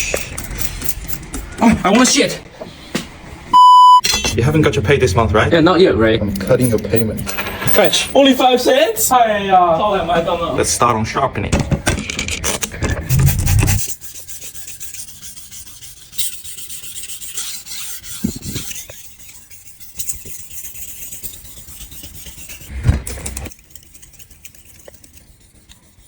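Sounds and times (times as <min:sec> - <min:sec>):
knife rasping on sharpener: 0:13.1 - 0:26.0.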